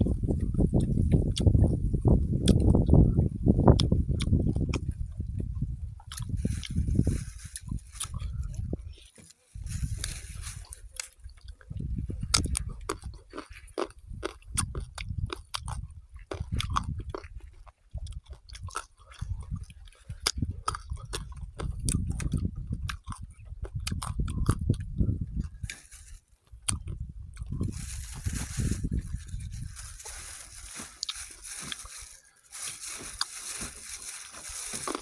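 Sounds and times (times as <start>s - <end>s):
mouth clicks and smacks: 2.4s - 3.0s, 11.0s - 25.8s, 26.5s - 27.6s
person chewing food: 6.0s - 6.8s, 7.6s - 9.1s, 10.8s - 35.0s.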